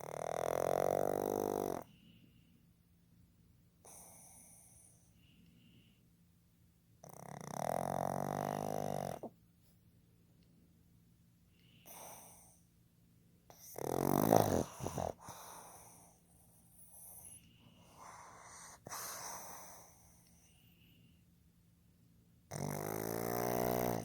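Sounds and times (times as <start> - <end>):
dog snoring: 0.0 - 2.0, 3.8 - 5.1, 7.0 - 9.4, 11.7 - 12.6, 13.5 - 20.5, 22.5 - 24.0
dog snuffling breaths: 13.5 - 20.2.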